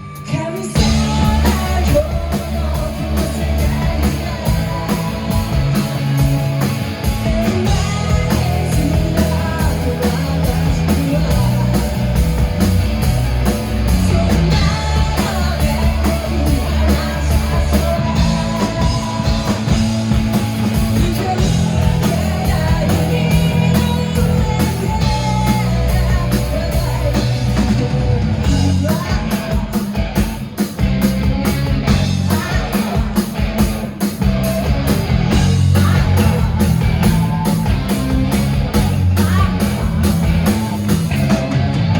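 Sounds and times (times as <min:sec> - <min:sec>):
live rock band playing: 0:00.0 - 0:41.9
woman singing: 0:00.2 - 0:06.0, 0:07.2 - 0:12.2, 0:13.9 - 0:20.0, 0:20.8 - 0:29.9, 0:31.9 - 0:33.1, 0:35.3 - 0:36.7, 0:39.1 - 0:39.9.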